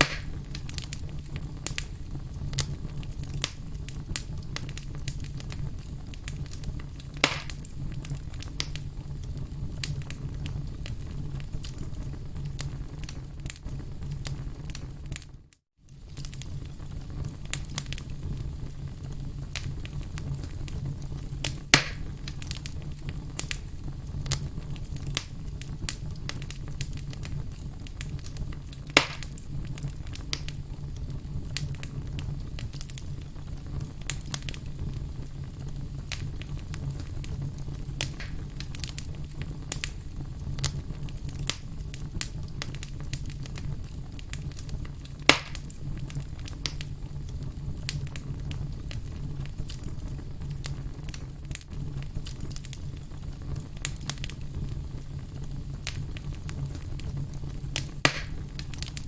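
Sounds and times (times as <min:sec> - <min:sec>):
firewood crackling: 0:00.0 - 0:59.0
loud fire pops: 0:00.0 - 0:59.0.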